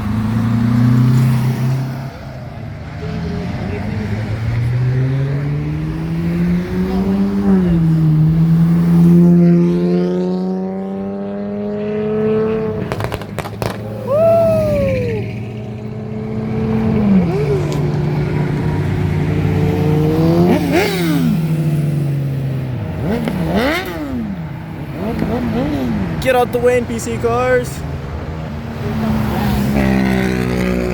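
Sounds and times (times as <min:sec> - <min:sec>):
cars accelerating past: 0:00.0 - 0:30.9
tire squeals: 0:13.4 - 0:15.6.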